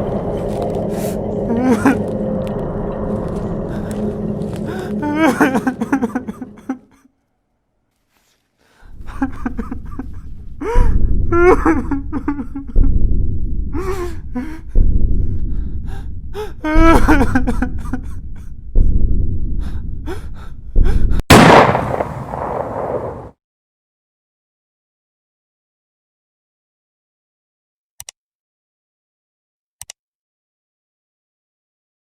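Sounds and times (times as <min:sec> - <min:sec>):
heavy low thumps: 0:10.6 - 0:17.9, 0:18.8 - 0:20.0, 0:20.8 - 0:23.2
loud blast: 0:21.3 - 0:23.3.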